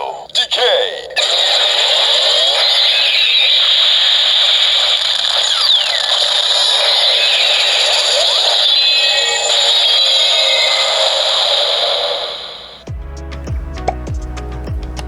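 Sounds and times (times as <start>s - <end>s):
toy electronic sound effects: 0.0s - 12.9s.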